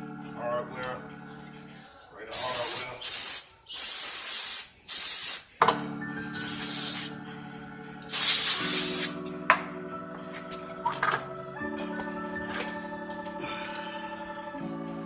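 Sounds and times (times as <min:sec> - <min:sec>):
background music: 0:00.0 - 0:15.0
spraying hiss: 0:02.3 - 0:05.6, 0:06.4 - 0:07.2, 0:08.1 - 0:09.2.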